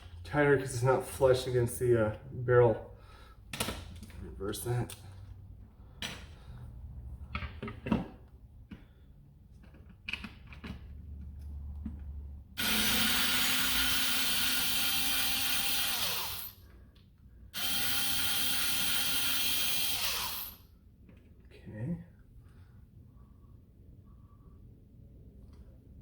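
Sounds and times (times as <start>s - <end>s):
cordless drill whining: 12.6s - 16.6s, 17.6s - 20.6s.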